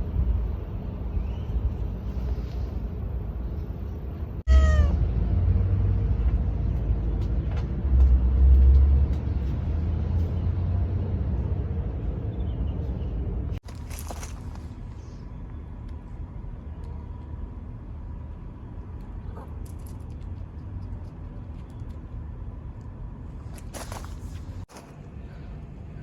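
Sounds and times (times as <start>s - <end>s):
cat meowing: 4.5s - 5.0s.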